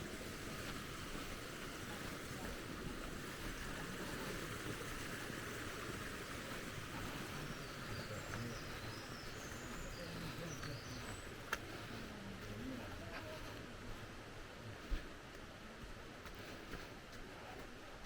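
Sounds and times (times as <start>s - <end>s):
rushing stream water: 0.0s - 18.0s
faint bird chirps: 7.0s - 11.4s.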